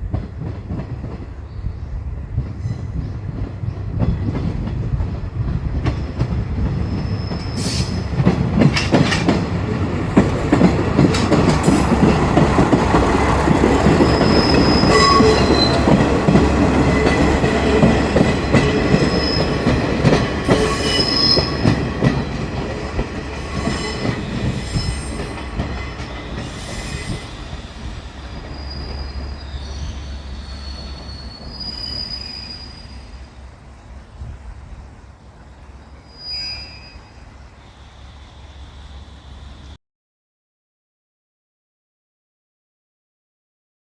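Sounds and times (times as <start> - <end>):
train wheels clacking over joints: 2.4 - 29.6
train wheels squealing: 2.6 - 4.4, 5.9 - 9.3, 13.4 - 22.5, 23.3 - 33.4, 35.7 - 39.8.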